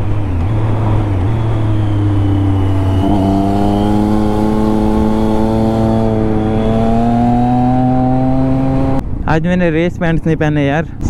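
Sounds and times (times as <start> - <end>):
motorcycle engine accelerating: 0.0 - 9.0.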